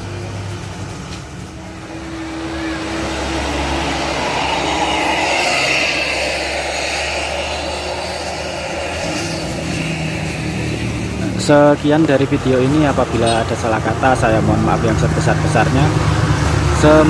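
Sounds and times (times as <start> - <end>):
bus diesel engine climbing: 0.0 - 17.0.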